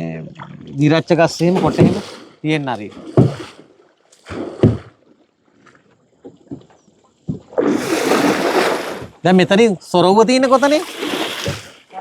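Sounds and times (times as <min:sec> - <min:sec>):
water splashing: 0:00.4 - 0:09.2, 0:10.4 - 0:12.0
rush of churned water: 0:01.4 - 0:05.0, 0:07.5 - 0:09.2, 0:10.4 - 0:12.0.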